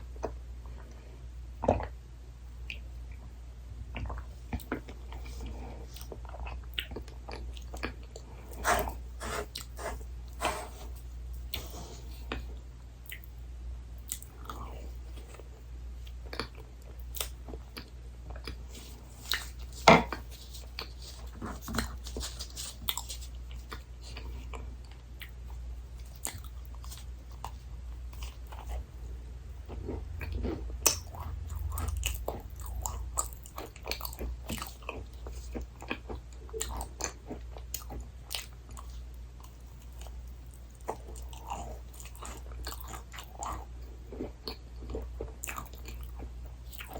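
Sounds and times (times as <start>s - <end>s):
chewing and mouth clicks: 3.9s - 8.7s, 12.3s - 13.3s, 14.0s - 15.4s, 16.0s - 19.7s, 20.6s - 28.8s, 29.6s - 46.9s.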